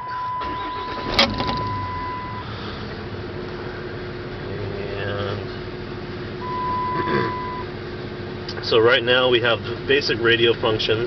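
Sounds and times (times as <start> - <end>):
high-pitched beep: 0.0 - 2.4, 6.4 - 7.7
pickup engine idling: 0.0 - 11.0.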